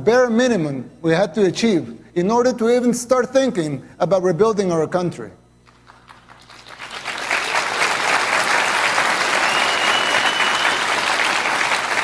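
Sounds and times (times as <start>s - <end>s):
audience applause: 5.9s - 12.0s.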